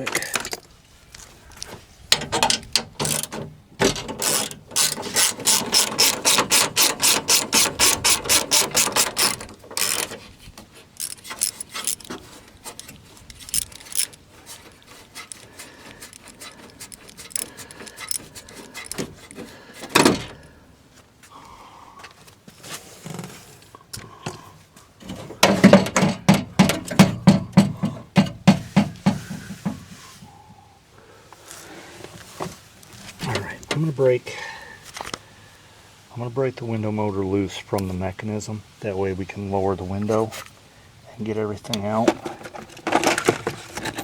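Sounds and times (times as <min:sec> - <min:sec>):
socket ratchet clicking: 0:02.2 - 0:10.2, 0:11.0 - 0:14.2, 0:15.2 - 0:20.4.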